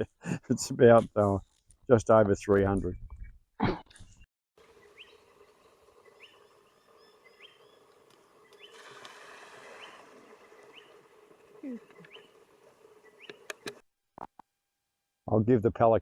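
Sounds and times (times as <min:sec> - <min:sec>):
small bird chirping: 0:02.9 - 0:13.8.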